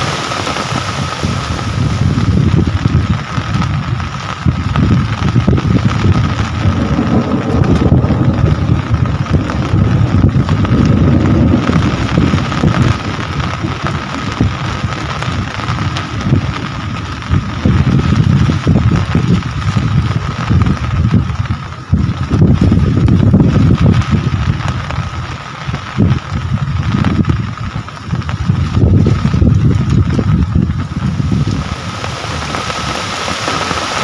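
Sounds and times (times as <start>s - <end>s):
heavy rain pouring: 0.0s - 34.0s
deep rumble: 0.8s - 34.0s.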